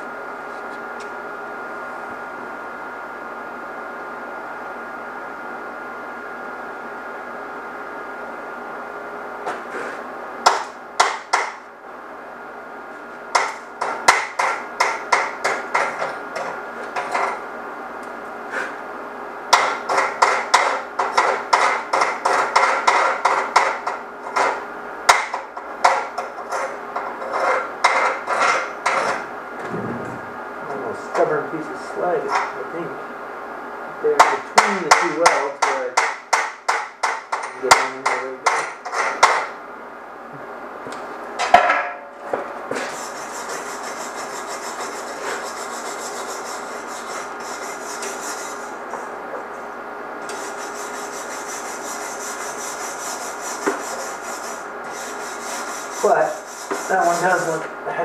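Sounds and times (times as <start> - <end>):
steady hum: 0.0 - 58.0
hammer tapping on steel weld: 34.2 - 39.5.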